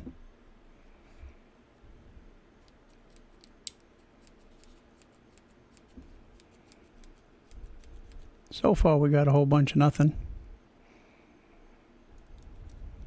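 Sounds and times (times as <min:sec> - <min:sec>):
small mechanical pencil clicks: 0:02.6 - 0:08.5, 0:12.2 - 0:12.8.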